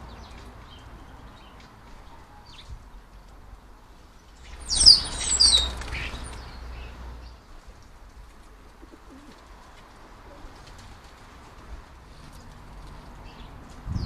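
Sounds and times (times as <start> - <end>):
bird chirping: 4.3 - 7.5.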